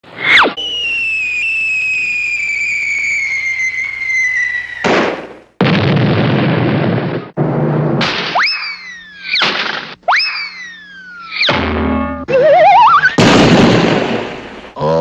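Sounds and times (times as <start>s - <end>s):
falling whistle: 0.2s - 4.9s, 8.4s - 9.4s, 10.1s - 11.5s, 12.2s - 13.2s
cartoon explosion blast: 4.8s - 10.7s, 11.4s - 14.8s.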